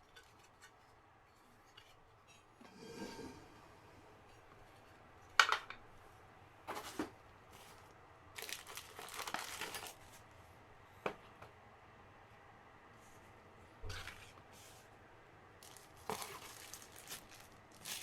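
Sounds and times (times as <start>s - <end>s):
packaging crinkling and tearing: 8.4s - 10.2s, 15.6s - 18.0s
packaging rustle: 8.4s - 10.2s, 15.6s - 18.0s.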